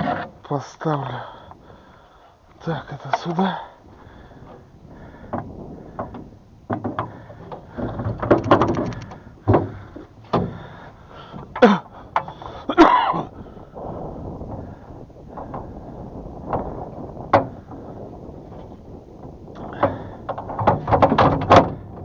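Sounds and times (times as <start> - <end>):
oar rattle: 1.8 - 22.0
oars knocking in boat: 5.2 - 13.0, 19.6 - 22.0.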